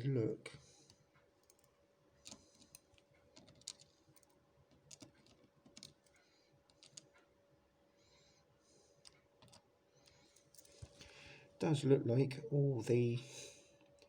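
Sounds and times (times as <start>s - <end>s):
small clicks of lock parts: 0.9s - 7.3s, 9.0s - 11.0s.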